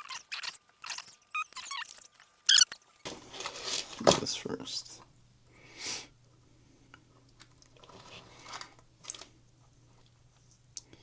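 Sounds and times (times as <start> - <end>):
faint steady hum: 3.0 - 11.0.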